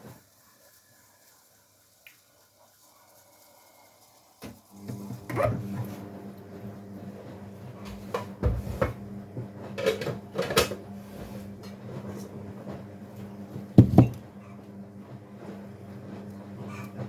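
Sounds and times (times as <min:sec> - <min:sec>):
washing machine hum: 0:04.6 - 0:17.0
household knocks and clunks: 0:13.8 - 0:14.2.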